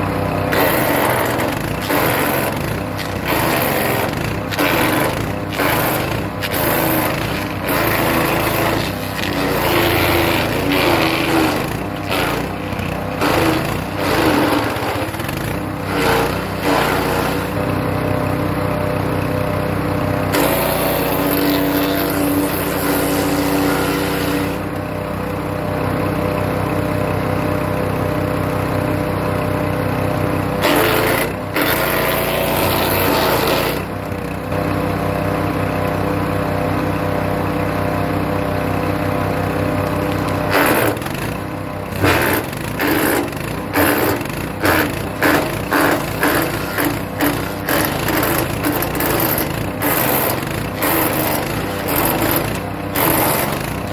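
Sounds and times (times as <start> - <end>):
wood chipper engine running: 0.0 - 53.9
branches chipping and shredding: 0.6 - 17.6, 42.0 - 53.9.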